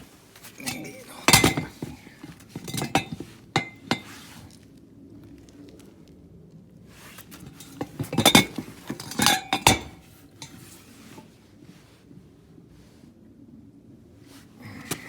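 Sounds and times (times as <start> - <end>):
metal tools clanking: 0.5 - 4.2, 7.4 - 10.7.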